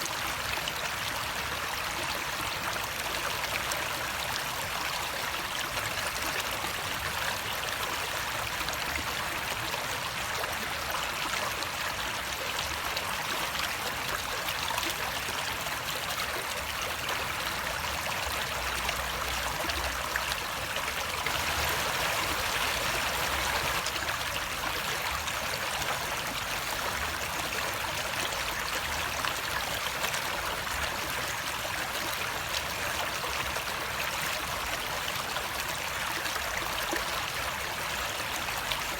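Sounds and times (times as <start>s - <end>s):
running water: 12.2s - 38.9s.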